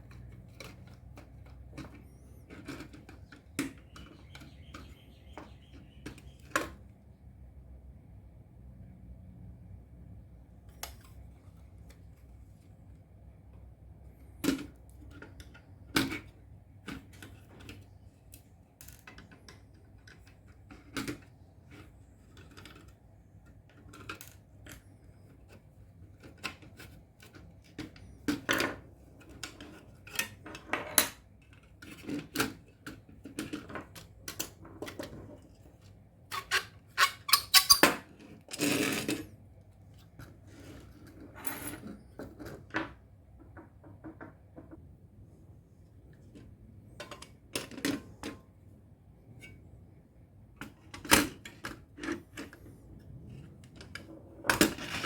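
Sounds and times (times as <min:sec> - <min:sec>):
tools and metal parts clinking: 0:41.0 - 0:42.4.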